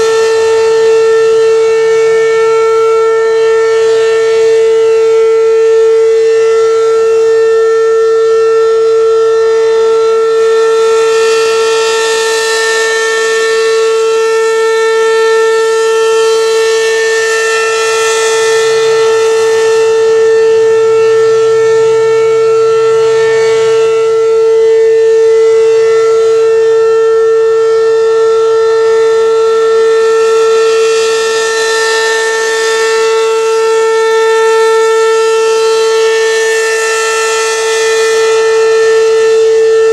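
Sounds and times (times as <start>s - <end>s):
outdoor warning siren: 0.0s - 39.9s.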